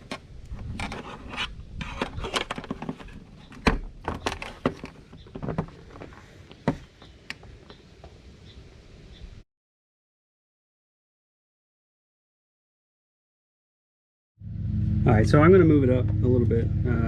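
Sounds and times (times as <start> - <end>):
clicks knocks and scraping: 0.0 - 7.5.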